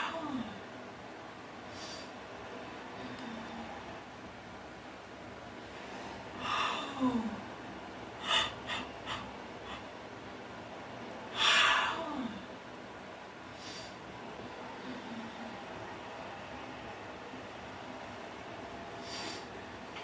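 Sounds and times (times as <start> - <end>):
breathy puffs: 8.2 - 10.0, 19.0 - 19.6
person yawning: 11.4 - 12.4.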